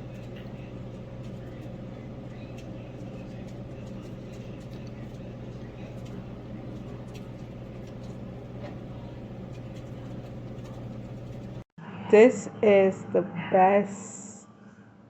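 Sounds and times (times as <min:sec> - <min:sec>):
air fryer humming: 0:00.0 - 0:11.7.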